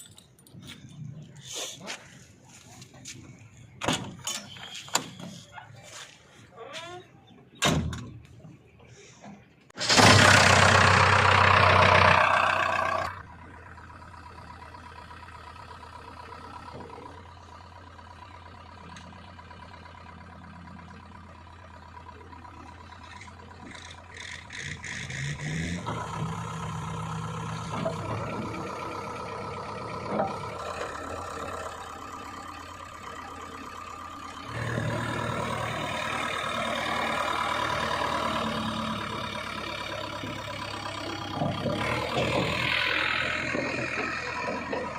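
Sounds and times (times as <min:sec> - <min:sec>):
diesel engine starting and idling: 0:07.1 - 0:44.9
diesel engine revving: 0:08.9 - 0:44.9.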